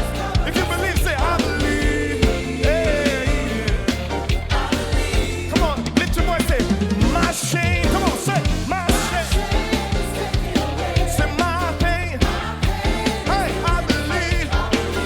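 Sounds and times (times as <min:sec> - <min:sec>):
choir singing: 0:00.0 - 0:06.3, 0:07.2 - 0:15.0
live band with bass: 0:00.0 - 0:15.0
steady drum beats: 0:00.0 - 0:15.0.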